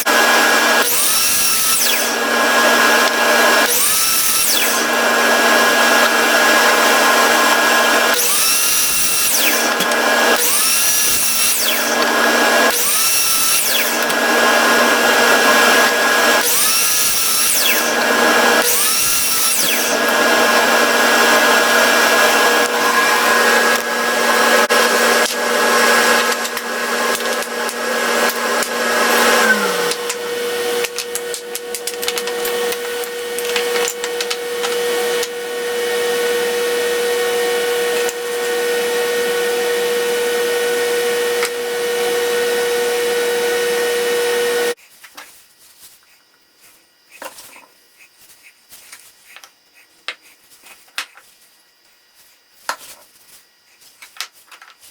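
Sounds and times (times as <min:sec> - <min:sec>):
electric drill drilling wood: 0:00.0 - 0:44.8.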